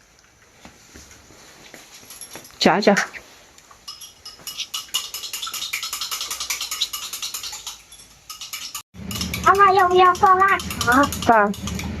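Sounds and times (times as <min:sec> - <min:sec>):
chopsticks clinking against bowl: 0:03.8 - 0:12.0.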